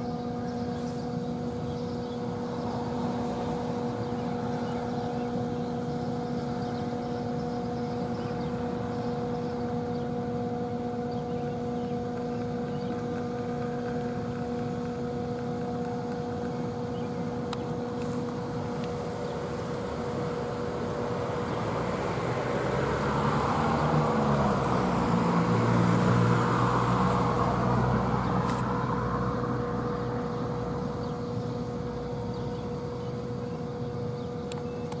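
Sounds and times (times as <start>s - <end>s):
motor vehicle passing by: 21.8s - 30.5s.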